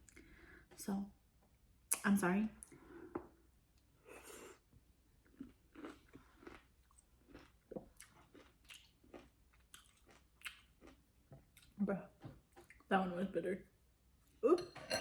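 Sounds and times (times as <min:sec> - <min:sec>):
chewing and biting: 0:05.3 - 0:11.7.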